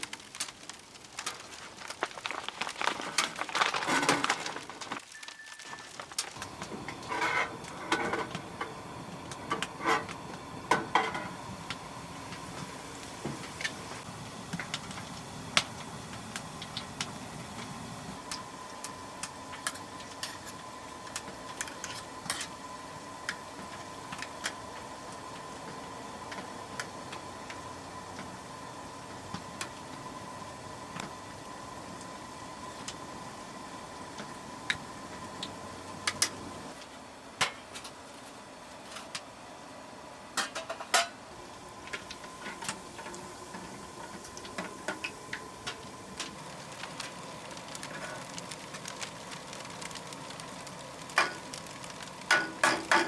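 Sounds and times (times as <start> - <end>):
wood stove ticks and pops: 0.0 - 22.6, 41.8 - 53.0
faint steady high tone: 5.2 - 5.9.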